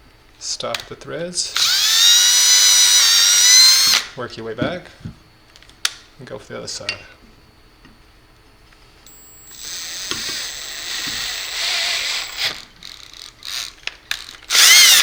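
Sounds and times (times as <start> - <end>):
drill tap grinding whirr: 1.5 - 4.1, 9.1 - 15.0.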